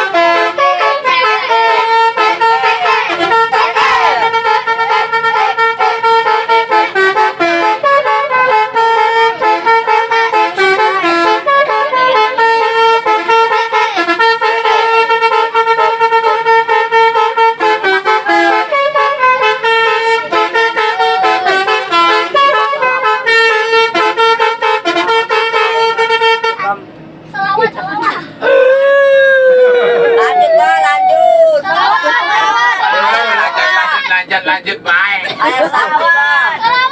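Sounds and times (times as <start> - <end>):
musical air horn melody: 0.0 - 26.6.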